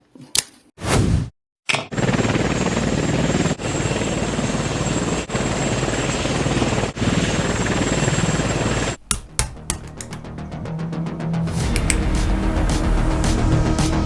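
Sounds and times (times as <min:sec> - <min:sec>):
helicopter rotor and engine: 0:01.9 - 0:09.0.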